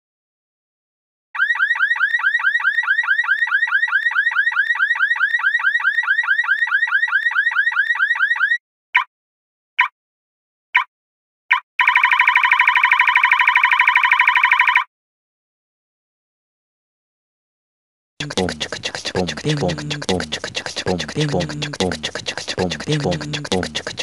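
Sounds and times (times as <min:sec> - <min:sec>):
car alarm chirping and beeping: 0:01.4 - 0:09.1.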